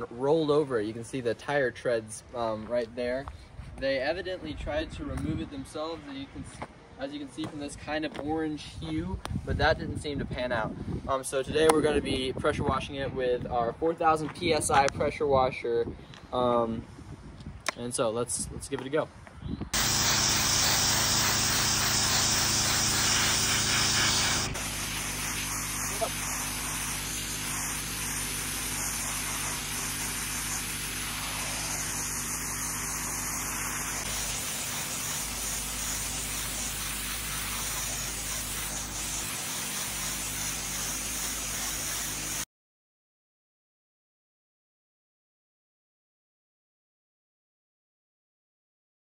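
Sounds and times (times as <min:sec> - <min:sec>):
high-pressure water jet hissing: 0:19.8 - 0:42.4
pressure washer motor: 0:19.8 - 0:42.4.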